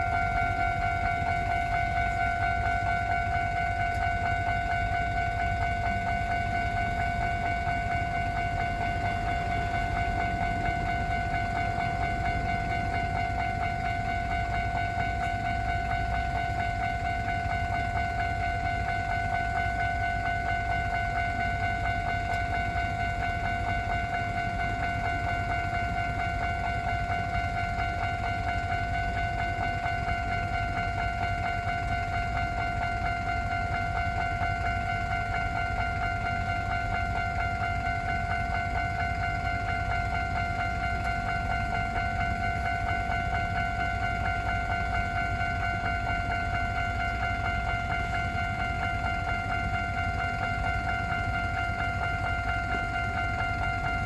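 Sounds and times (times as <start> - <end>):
level crossing warning bell ringing: 0.0 - 54.0.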